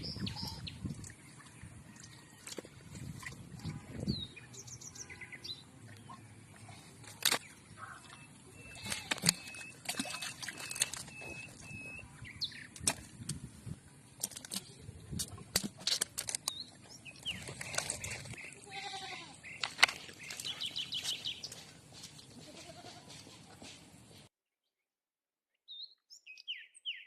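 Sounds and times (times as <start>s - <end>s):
small birds chirping: 0.0s - 2.2s, 3.6s - 13.1s, 16.3s - 23.4s, 25.7s - 27.0s.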